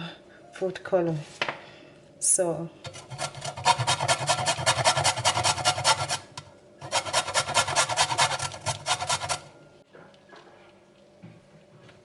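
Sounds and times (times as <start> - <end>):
seed being grated: 2.9 - 9.5.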